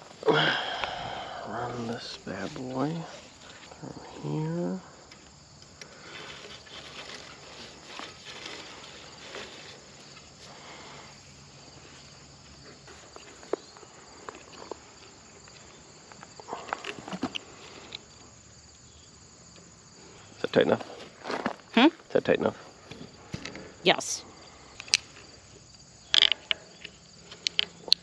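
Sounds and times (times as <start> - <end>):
handling rustling: 5.9 - 10.4.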